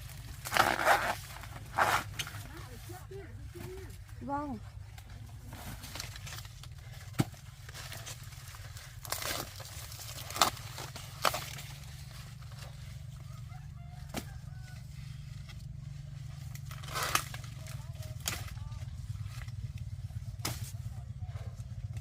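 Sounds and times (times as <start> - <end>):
dry corn leaves rustling: 0.0 - 22.0
corn ears snapping off stalks: 5.8 - 11.9, 16.4 - 20.9.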